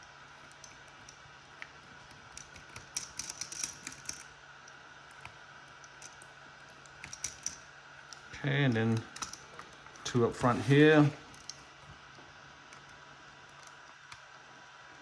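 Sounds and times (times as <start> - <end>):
screwdriver clicks on small screws: 5.1 - 8.3.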